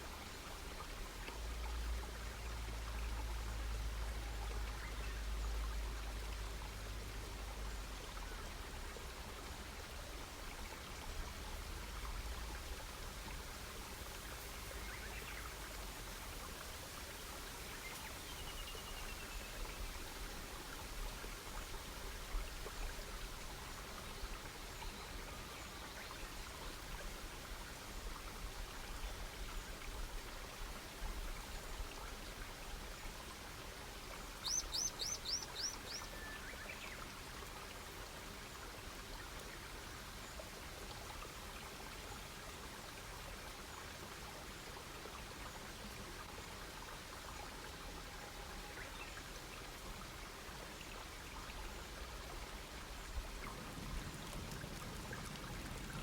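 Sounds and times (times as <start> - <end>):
campfire crackling: 53.6 - 56.0.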